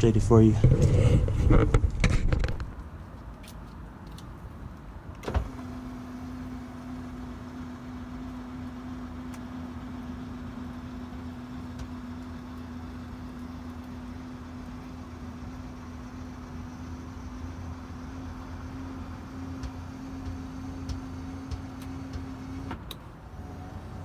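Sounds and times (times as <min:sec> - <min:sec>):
electric seat motor humming: 0:05.2 - 0:24.0.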